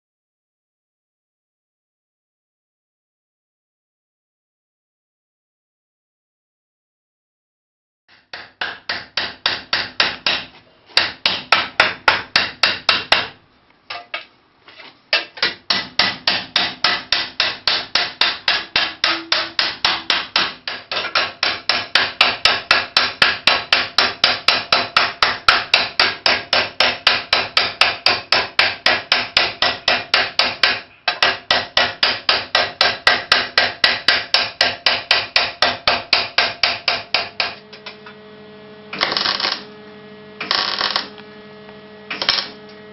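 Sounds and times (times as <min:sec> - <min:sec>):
welding arc crackling: 0:39.0 - 0:39.8, 0:40.4 - 0:41.2, 0:42.1 - 0:42.7.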